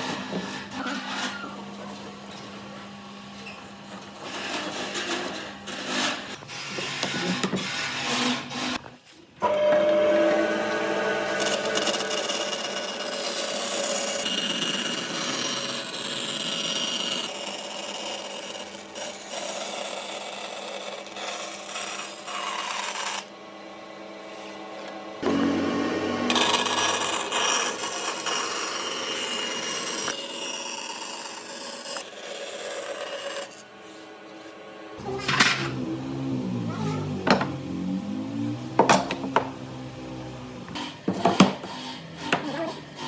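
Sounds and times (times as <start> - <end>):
power tools working wood: 9.4 - 43.0.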